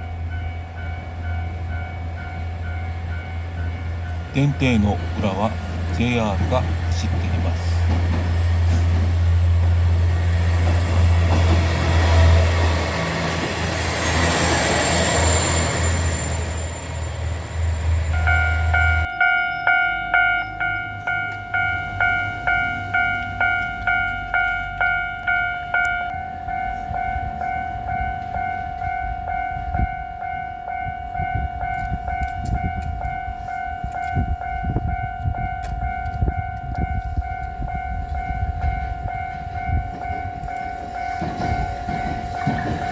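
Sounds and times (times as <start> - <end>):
level crossing warning bell: 0.0 - 9.3, 18.0 - 42.9
diesel railcar engine hum: 0.0 - 42.9
rail noise: 0.0 - 42.9.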